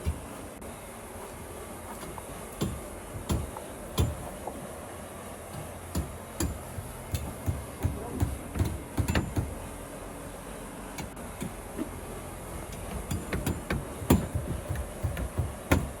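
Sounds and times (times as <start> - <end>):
hammering on wood: 2.6 - 4.3, 5.6 - 9.6, 12.8 - 16.0.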